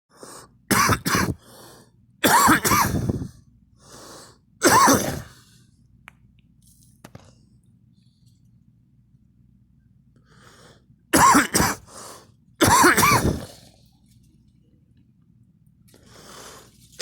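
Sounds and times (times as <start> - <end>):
person coughing: 0.7 - 1.4, 2.2 - 3.3, 4.6 - 5.4, 11.2 - 12.0, 12.6 - 13.7
breath in: 16.0 - 17.0.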